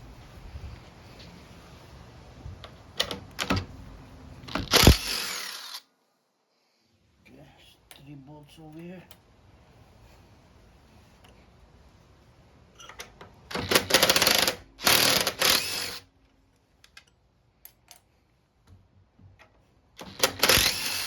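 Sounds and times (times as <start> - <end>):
power drill spinning out bolts: 4.5 - 5.9, 13.5 - 16.1, 20.0 - 21.0.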